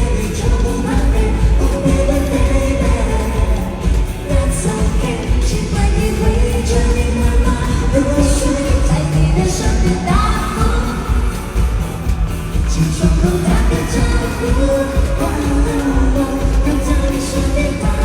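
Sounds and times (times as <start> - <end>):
band with bass and drum beat: 0.0 - 18.0.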